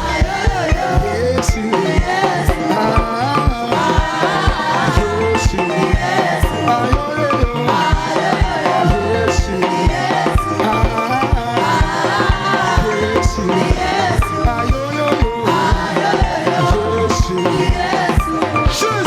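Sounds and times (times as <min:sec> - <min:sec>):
quick drum beat: 0:00.0 - 0:19.0
voices singing a melody: 0:00.0 - 0:19.0.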